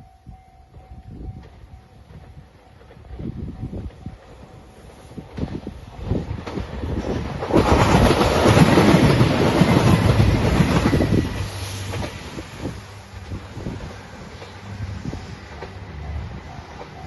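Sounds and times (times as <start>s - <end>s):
diesel train passing: 0.0s - 17.0s
wheels clattering over rails: 6.2s - 14.7s.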